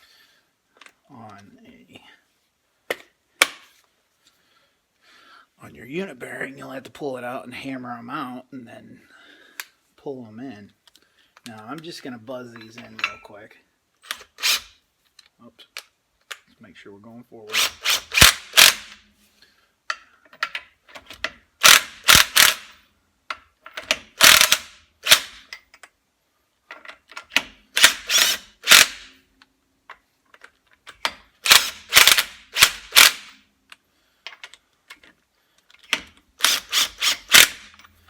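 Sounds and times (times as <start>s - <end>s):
impact wrench rattling: 17.5s - 19.0s, 21.6s - 22.7s, 23.8s - 25.5s, 30.9s - 33.4s, 35.8s - 38.0s.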